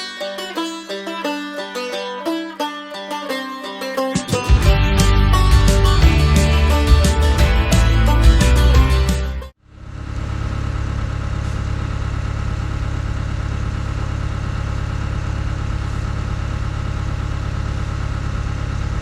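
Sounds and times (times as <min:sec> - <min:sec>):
engine running steadily: 0:04.4 - 0:19.0.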